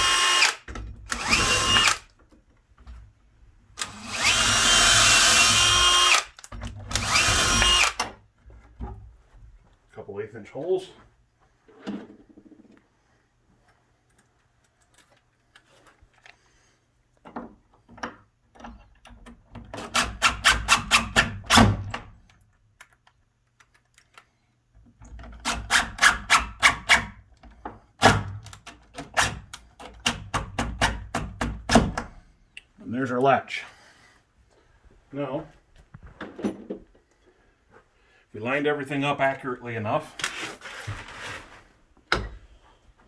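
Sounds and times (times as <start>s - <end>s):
impact driver hammering screws: 0.0s - 2.1s, 3.8s - 8.1s, 19.8s - 21.8s, 25.4s - 27.1s, 28.0s - 32.0s.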